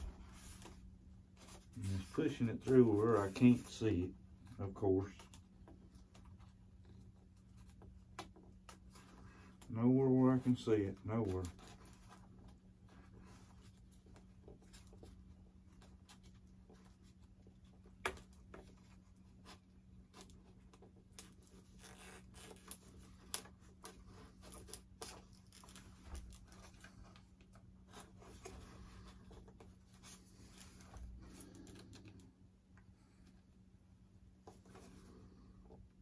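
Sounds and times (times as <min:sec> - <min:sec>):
steady low hum: 0:00.0 - 0:36.0
wire scratching and rustling: 0:10.3 - 0:33.3.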